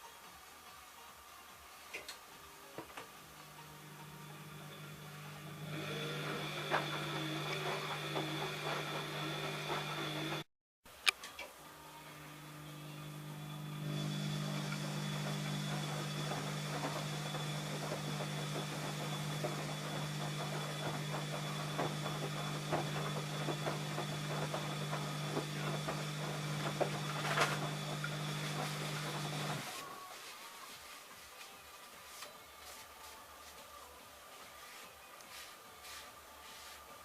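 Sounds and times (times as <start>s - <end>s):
washing machine motor hum: 3.4s - 10.5s, 11.7s - 29.8s.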